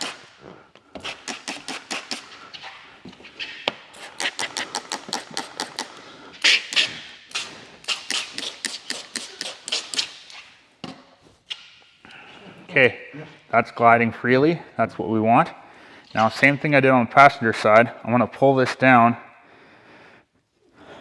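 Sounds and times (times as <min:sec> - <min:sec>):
spray bottle hissing sprays: 0:00.0 - 0:00.3, 0:01.0 - 0:02.4, 0:03.8 - 0:10.5.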